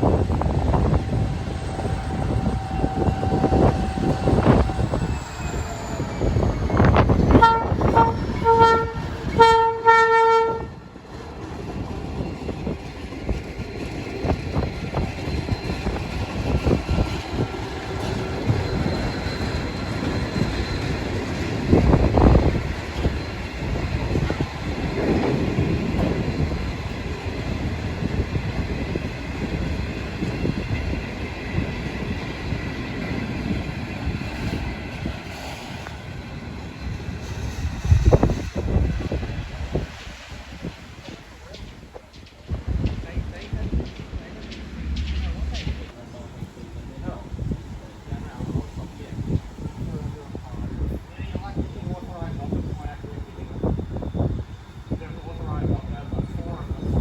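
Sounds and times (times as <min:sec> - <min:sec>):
train rumbling and clattering on rails: 0:00.0 - 0:57.0
train horn toots and blast: 0:07.2 - 0:10.9.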